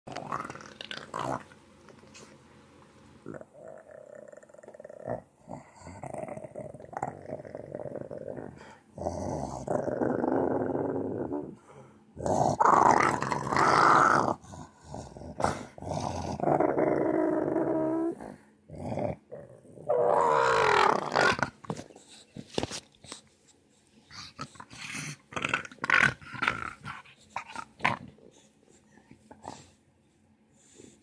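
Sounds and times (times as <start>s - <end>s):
long rough growls: 0.1s - 1.5s, 3.2s - 11.6s, 12.2s - 21.6s.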